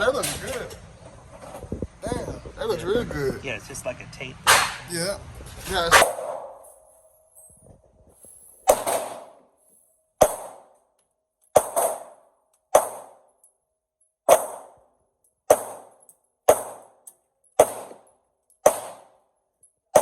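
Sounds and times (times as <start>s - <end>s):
pistol shots echoing: 5.9s - 6.6s, 8.7s - 9.4s, 10.2s - 10.8s, 11.6s - 13.2s, 14.3s - 14.8s, 15.5s - 17.0s, 17.6s - 19.2s.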